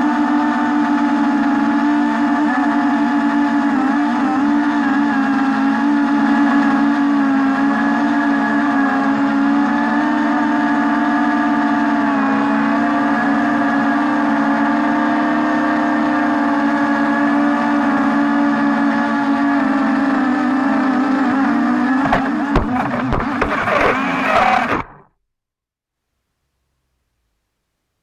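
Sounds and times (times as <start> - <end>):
drone motors buzzing: 19.8 - 25.1.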